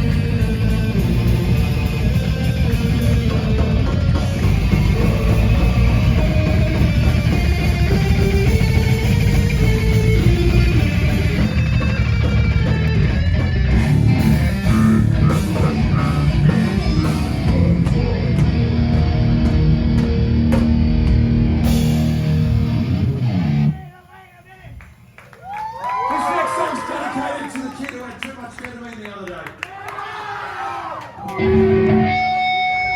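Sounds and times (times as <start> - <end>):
heavy metal band playing live: 0.0 - 23.8, 31.4 - 32.9.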